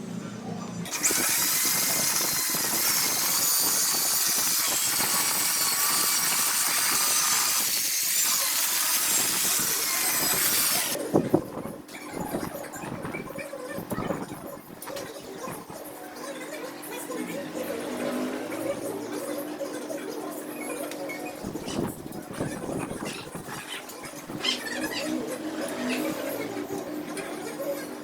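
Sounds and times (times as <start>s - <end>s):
power tool hissing on metal: 0.9s - 11.0s.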